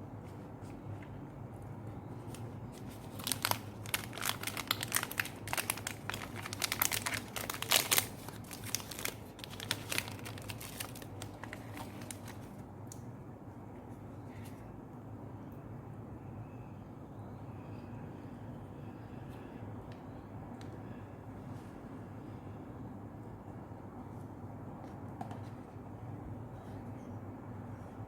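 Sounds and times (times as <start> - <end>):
crinkling and rustling: 2.2 - 12.6.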